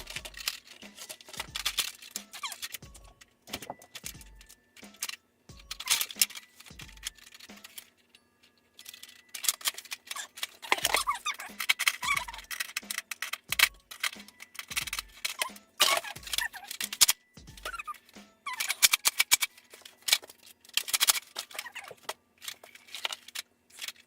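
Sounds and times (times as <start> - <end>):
plastic darts clicking and rattling: 0.0 - 8.1, 8.8 - 24.0.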